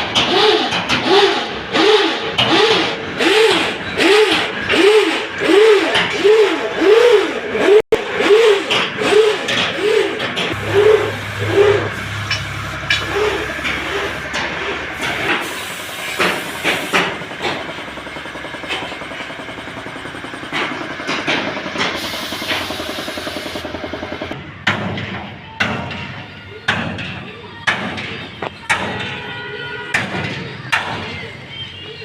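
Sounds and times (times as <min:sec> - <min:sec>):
machinery clattering: 0:00.0 - 0:29.2
low engine hum: 0:09.9 - 0:24.4.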